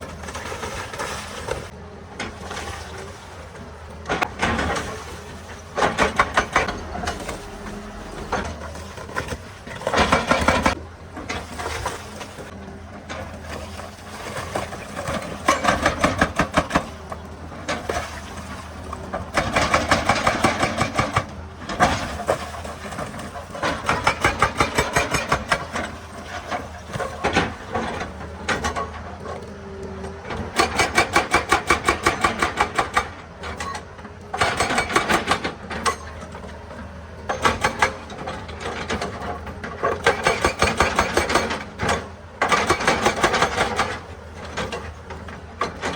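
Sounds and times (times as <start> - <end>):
diesel engine running: 0.0 - 30.8
hydraulic breaker hammer pounding rock: 4.0 - 45.9.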